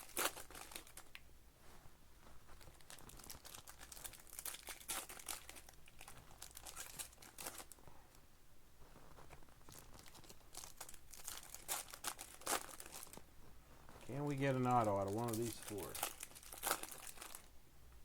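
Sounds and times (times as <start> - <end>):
packaging crinkling and tearing: 0.0 - 1.2, 2.5 - 7.8, 9.1 - 13.3, 14.0 - 17.5.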